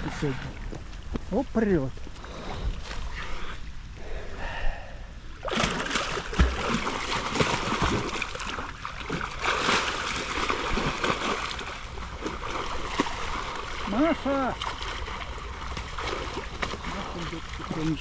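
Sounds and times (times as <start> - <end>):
water splashing and sloshing: 0.0 - 4.0, 5.3 - 18.0.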